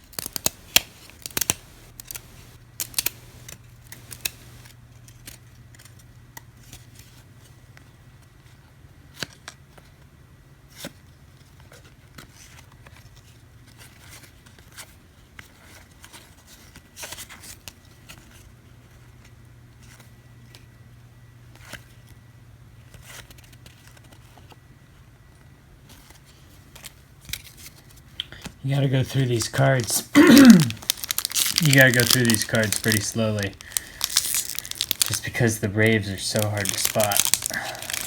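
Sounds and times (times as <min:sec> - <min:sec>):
rustling: 0:00.0 - 0:04.7, 0:29.8 - 0:38.0
steady low hum: 0:00.0 - 0:04.7
trading cards clicking and sliding: 0:00.0 - 0:04.7, 0:29.6 - 0:38.0.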